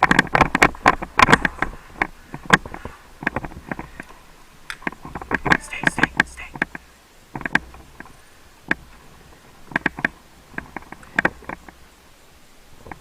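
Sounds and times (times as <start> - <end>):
sharp clicks and knocks: 0.0 - 8.1.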